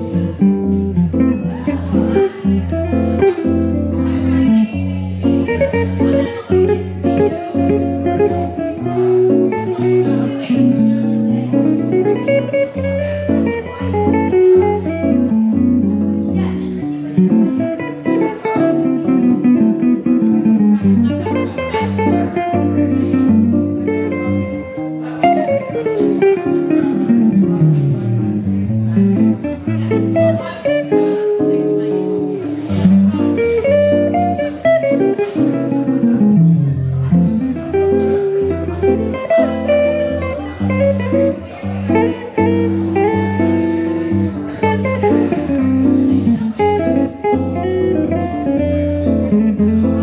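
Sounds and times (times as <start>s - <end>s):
electric guitar fingerstyle: 0.0s - 50.0s.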